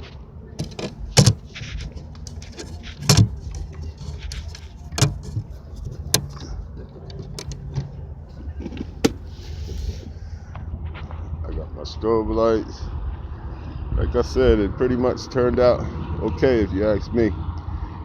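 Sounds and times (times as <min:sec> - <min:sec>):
low steady rumble: 0:00.0 - 0:18.0
knocks and clunks of gear: 0:00.6 - 0:09.3.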